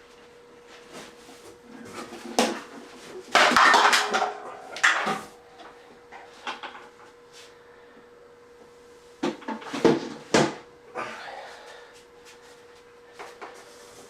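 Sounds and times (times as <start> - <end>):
faint steady hum: 0.0 - 14.0
tools clattering on a workbench: 3.4 - 5.3.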